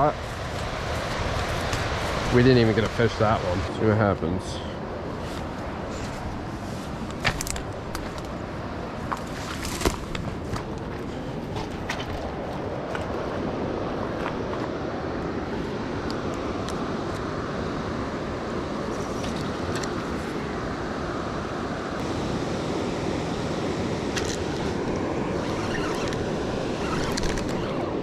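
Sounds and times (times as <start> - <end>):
floodwater rushing through spillway: 0.0 - 4.6.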